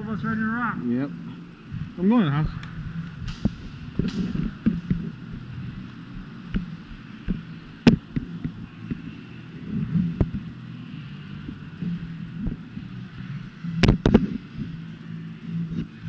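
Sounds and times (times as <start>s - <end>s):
steady low hum: 0.0s - 16.0s
footsteps and gear thumps: 3.1s - 9.1s.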